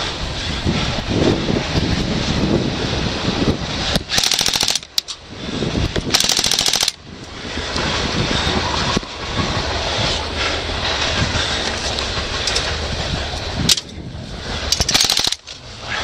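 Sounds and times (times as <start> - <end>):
wind rushing: 0.0 - 16.0
airsoft gun full-auto bursts: 4.1 - 4.9, 6.1 - 7.0, 14.8 - 15.5.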